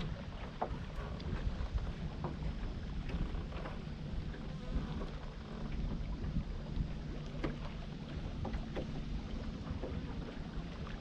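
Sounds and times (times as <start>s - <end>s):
steady low rumble: 0.0s - 11.0s
water lapping against boat: 0.0s - 11.0s
wind buffeting microphone: 0.0s - 11.0s
light clicks and taps: 7.2s - 7.8s.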